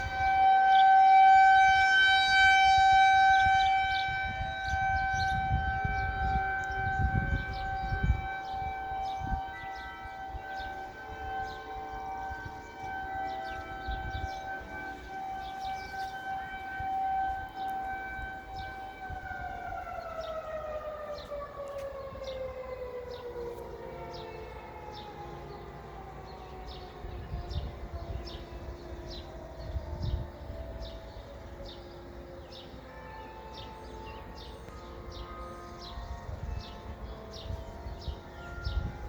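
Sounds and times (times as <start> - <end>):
warning sirens steady tone: 0.0 - 39.0.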